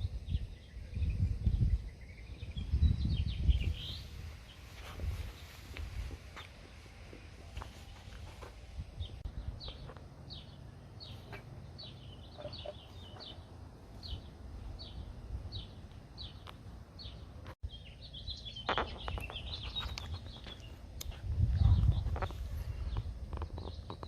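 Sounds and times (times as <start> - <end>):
songbird chirping and twittering: 0.0 - 24.0.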